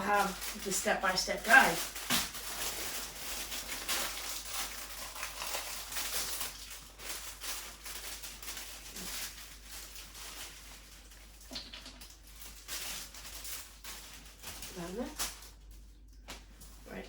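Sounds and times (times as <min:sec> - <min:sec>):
paper rustling: 0:00.0 - 0:11.4.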